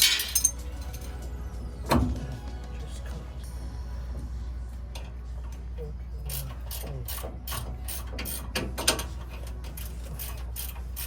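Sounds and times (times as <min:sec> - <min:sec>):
ratchet wrench clicking: 0:09.8 - 0:11.0.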